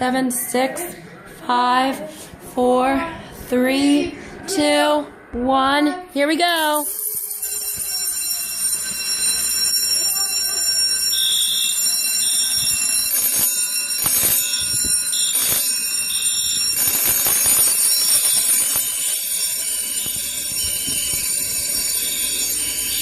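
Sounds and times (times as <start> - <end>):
alarm bells ringing: 6.6 - 23.0
smoke alarm beeping: 6.6 - 23.0
electronic alarm horns: 8.3 - 23.0.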